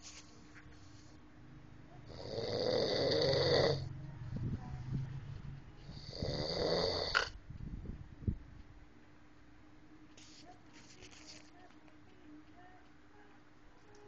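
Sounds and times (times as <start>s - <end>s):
person snoring: 2.1s - 3.9s, 5.8s - 7.3s.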